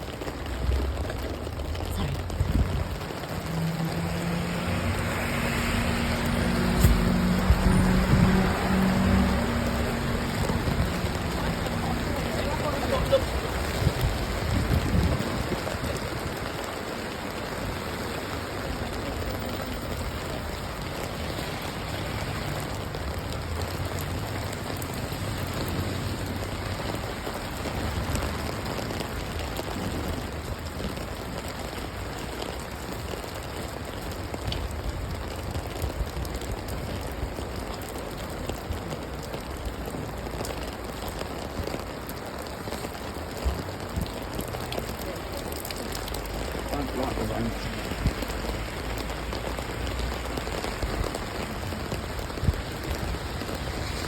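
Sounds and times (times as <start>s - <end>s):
rain on hard surfaces: 0.0s - 54.0s.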